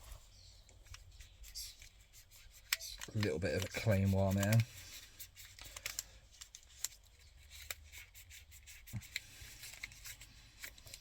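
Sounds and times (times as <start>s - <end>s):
plastic parts clicking: 5.5s - 7.0s.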